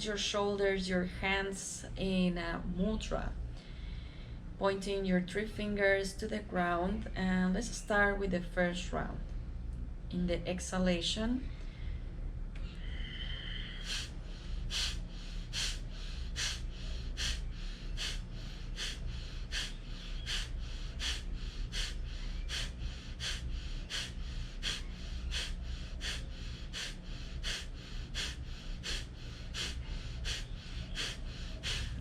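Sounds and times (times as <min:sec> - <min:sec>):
steady low hum: 0:00.0 - 0:32.0
nasal inhale: 0:11.6 - 0:32.0
forced nasal exhalations: 0:13.0 - 0:32.0.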